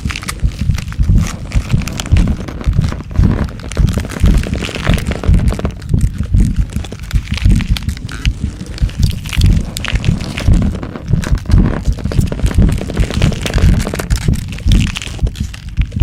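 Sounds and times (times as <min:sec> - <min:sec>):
cracking and crackling: 0:00.0 - 0:16.0
deep thuds and rumbles: 0:00.0 - 0:16.0.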